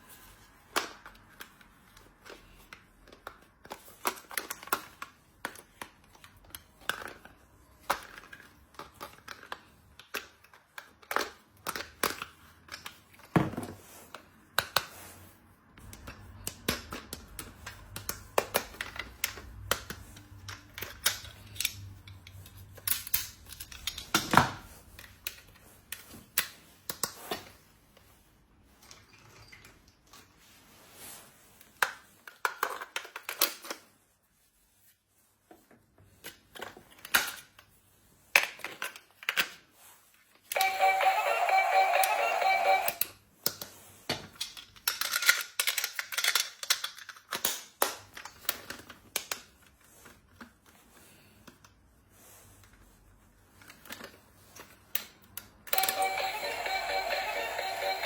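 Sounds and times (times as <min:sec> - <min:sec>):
plastic toys clicking and tapping: 0:00.7 - 0:13.4, 0:14.1 - 0:14.9, 0:15.8 - 0:27.6, 0:31.7 - 0:33.8, 0:38.3 - 0:39.6, 0:40.4 - 0:50.7, 0:53.5 - 0:58.0.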